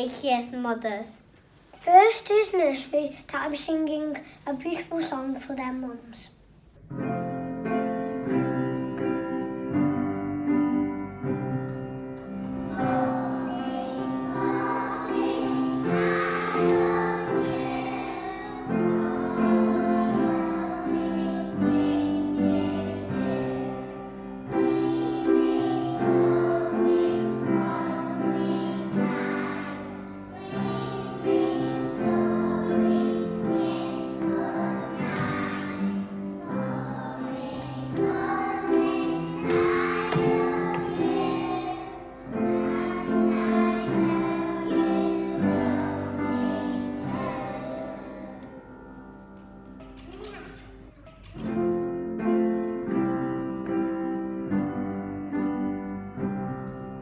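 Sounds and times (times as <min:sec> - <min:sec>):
musical accompaniment: 0:06.8 - 0:57.0
children singing: 0:12.5 - 0:49.1.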